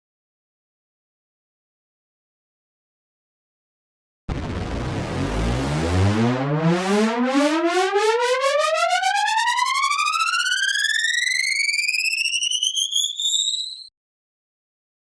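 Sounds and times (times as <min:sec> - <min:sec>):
synth riser gliding upward: 0:04.3 - 0:13.9.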